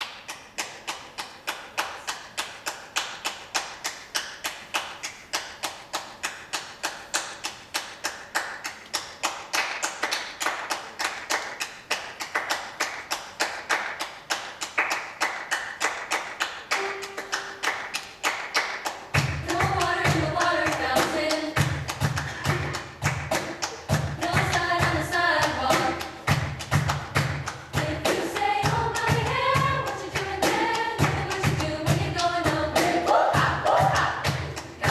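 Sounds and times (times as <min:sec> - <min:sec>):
rhythmic hand claps: 0:00.0 - 0:34.9
choir singing: 0:16.7 - 0:26.5, 0:27.2 - 0:34.9.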